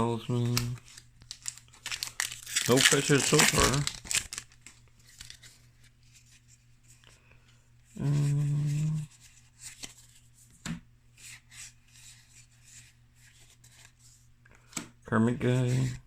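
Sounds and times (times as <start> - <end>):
trading cards flicking and rustling: 0.3 - 6.4
man humming: 8.0 - 9.1.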